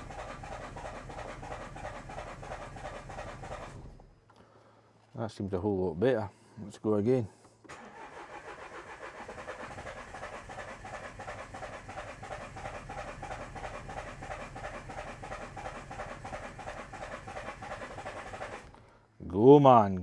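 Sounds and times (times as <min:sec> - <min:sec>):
starter motor cranking diesel engine: 0:00.0 - 0:04.2, 0:07.6 - 0:18.9.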